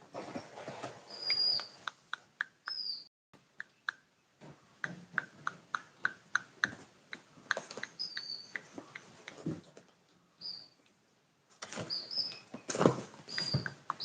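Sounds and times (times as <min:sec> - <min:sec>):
bird chirping: 0:01.1 - 0:09.4, 0:10.3 - 0:10.8, 0:11.8 - 0:14.0.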